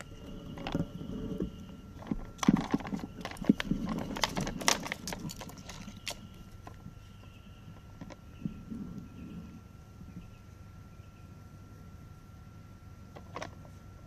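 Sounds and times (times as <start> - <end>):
plastic toy clattering: 2.0 - 6.8.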